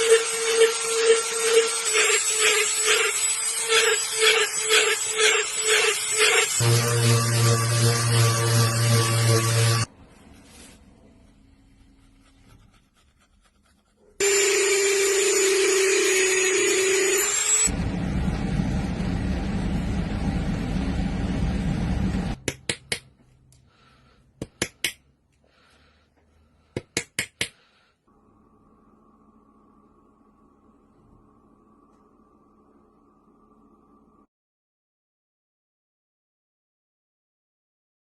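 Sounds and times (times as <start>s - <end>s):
router grinding into wood: 0.0s - 9.9s
router spindle whine: 0.0s - 9.9s, 14.2s - 19.6s.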